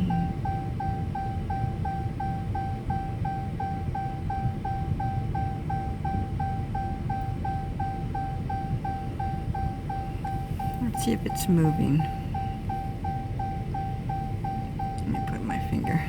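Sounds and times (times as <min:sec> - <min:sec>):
short high beeps: 0:00.0 - 0:00.7
steady low rumble: 0:00.0 - 0:16.0.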